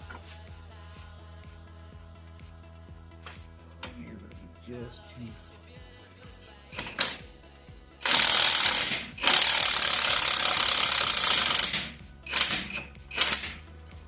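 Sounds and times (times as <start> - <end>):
impact wrench hammering: 6.8 - 7.2, 8.0 - 13.6.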